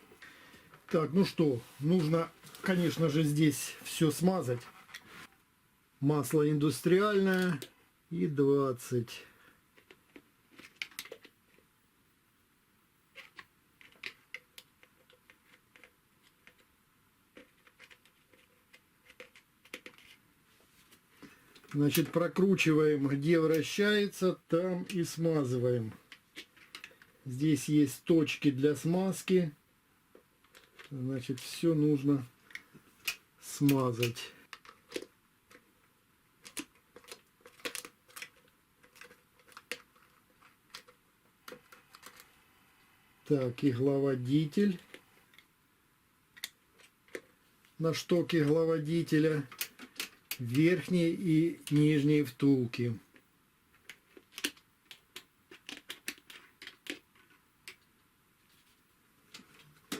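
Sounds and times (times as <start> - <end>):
faint clicks and metallic taps: 17.3 - 20.2, 53.0 - 58.7.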